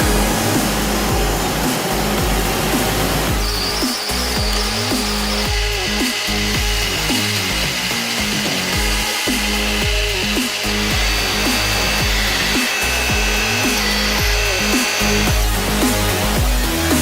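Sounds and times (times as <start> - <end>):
electronic dance music: 0.0 - 17.0
falling bass sweeps: 0.0 - 17.0
lathe cutting metal whine: 0.0 - 17.0.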